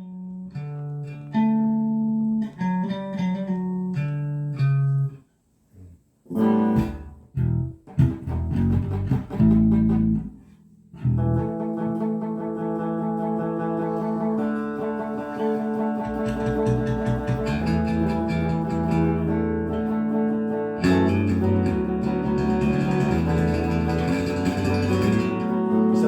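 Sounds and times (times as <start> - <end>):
picked electric guitar notes: 0.0 - 5.2, 6.3 - 26.0
strummed guitar chords: 6.3 - 26.0.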